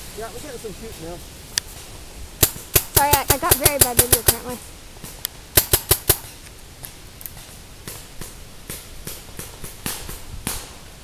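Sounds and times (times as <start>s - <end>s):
paintball markers firing: 5.6s - 6.3s.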